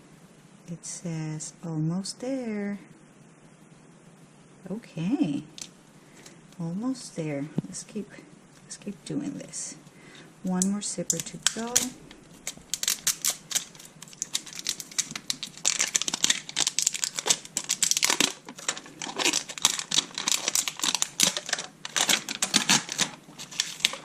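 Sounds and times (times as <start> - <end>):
plastic wrapping crinkling and tearing: 11.1 - 24.0.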